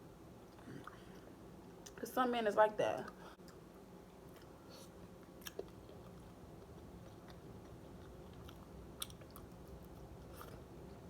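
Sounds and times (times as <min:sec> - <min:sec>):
person chewing food: 0:03.1 - 0:11.0.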